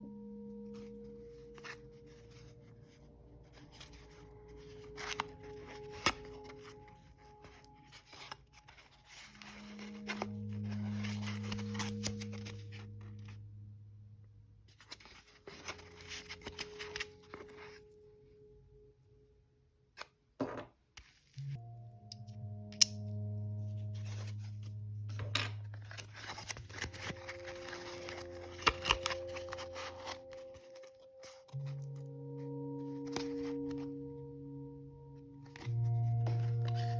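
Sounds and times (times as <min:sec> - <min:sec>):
soft background music: 0:00.0 - 0:20.1, 0:21.2 - 0:36.9
soft background tones: 0:00.0 - 0:20.3, 0:21.1 - 0:36.9
rustling and tearing handling noise: 0:00.8 - 0:13.4, 0:14.7 - 0:17.8, 0:25.6 - 0:32.0.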